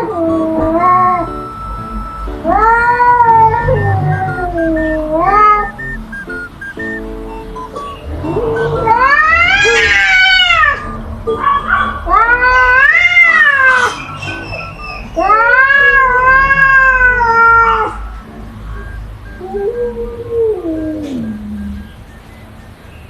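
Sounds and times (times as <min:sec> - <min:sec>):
cat yowling: 0:02.4 - 0:05.8, 0:08.4 - 0:18.2, 0:19.4 - 0:21.7.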